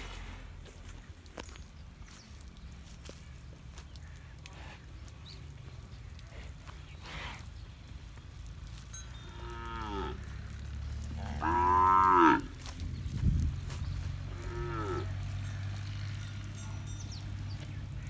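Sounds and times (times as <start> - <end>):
cattle mooing: 9.2 - 12.6, 14.2 - 16.4.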